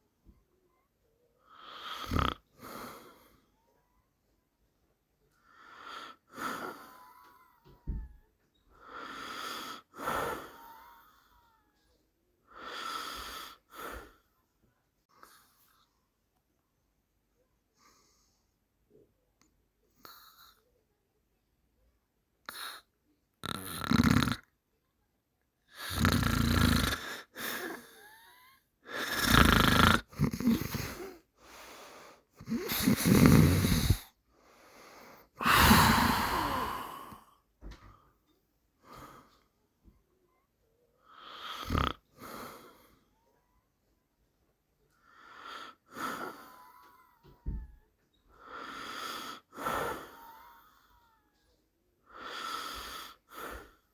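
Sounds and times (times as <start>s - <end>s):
person snoring: 1.6s - 3.2s, 23.4s - 24.4s, 25.8s - 31.2s, 32.4s - 34.1s, 35.4s - 37.3s, 41.2s - 42.4s.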